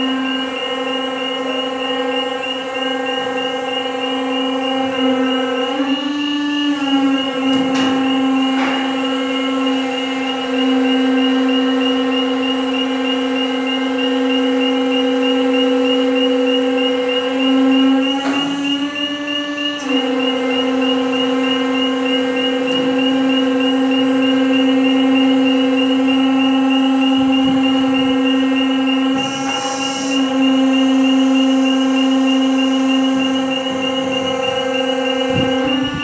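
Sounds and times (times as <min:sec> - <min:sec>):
press machine hum and whine: 0:00.0 - 0:36.0.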